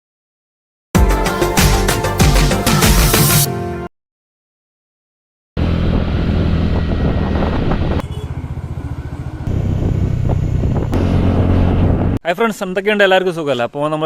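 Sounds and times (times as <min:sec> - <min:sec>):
scooter engine running: 0:05.6 - 0:11.9.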